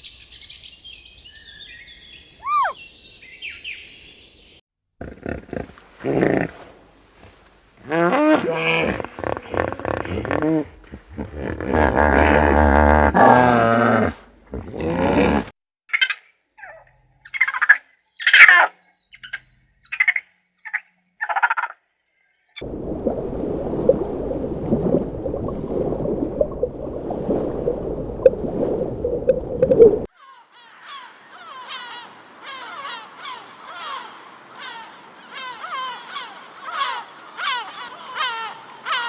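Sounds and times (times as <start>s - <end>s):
short animal calls: 2.4s - 2.8s.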